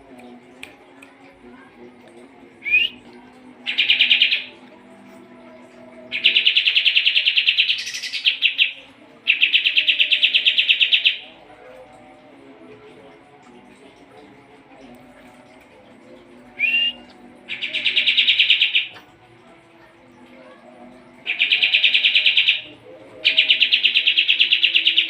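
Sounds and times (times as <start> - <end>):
songbird singing: 3.7 - 4.6, 6.1 - 11.3, 16.6 - 19.0, 21.2 - 25.0.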